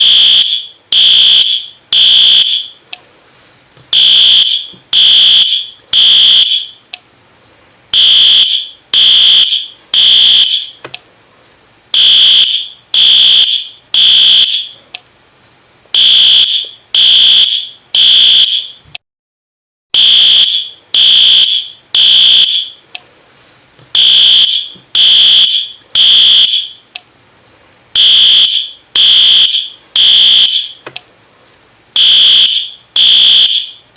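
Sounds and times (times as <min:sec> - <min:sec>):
fire alarm beeps: 0:00.0 - 0:02.8, 0:04.0 - 0:06.8, 0:08.0 - 0:10.8, 0:12.0 - 0:14.8, 0:16.0 - 0:18.8, 0:20.0 - 0:22.8, 0:24.0 - 0:26.8, 0:28.0 - 0:30.8, 0:32.0 - 0:33.8.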